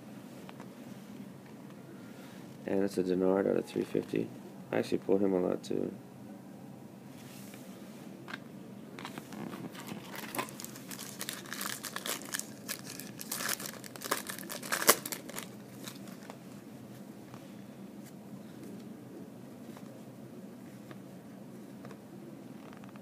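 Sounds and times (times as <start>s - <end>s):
wrapper crinkling and tearing: 9.3s - 16.3s.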